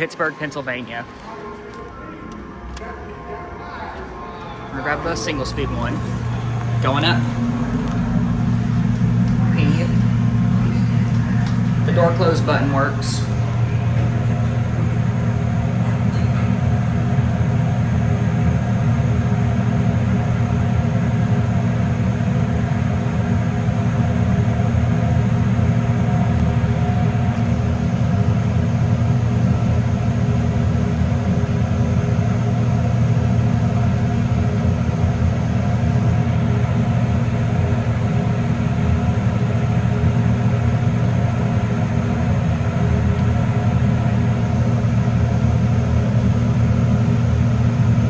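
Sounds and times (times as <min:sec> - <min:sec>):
faint steady tones: 0:00.0 - 0:21.8
elevator rumble and hum: 0:00.0 - 0:48.0.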